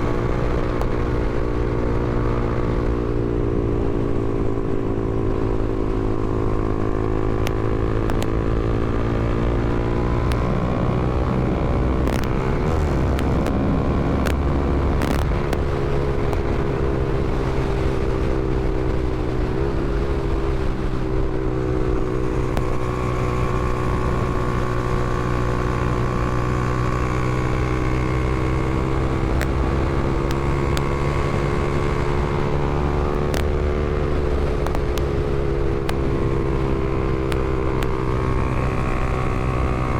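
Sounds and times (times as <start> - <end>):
motorcycle engine running: 0.0 - 39.9
sharp clicks: 7.4 - 8.4, 33.1 - 33.6, 34.3 - 35.1.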